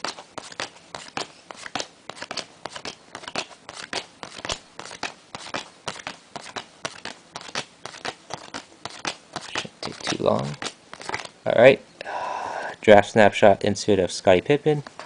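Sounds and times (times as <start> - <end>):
trading cards snapping: 0.0 - 11.3.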